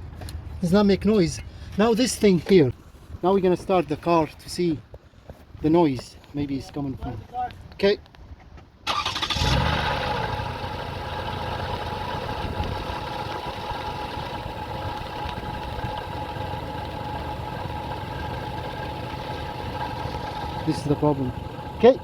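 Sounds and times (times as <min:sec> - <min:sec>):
car engine idling: 0:08.9 - 0:22.0
thin steady engine whine: 0:08.9 - 0:22.0.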